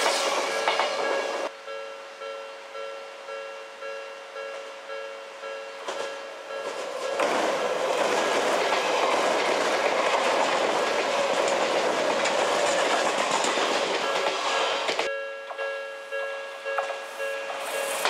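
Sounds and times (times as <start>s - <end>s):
wheels clacking over rail joints: 0.0s - 1.5s, 5.8s - 15.7s
electric train passing: 0.0s - 18.0s.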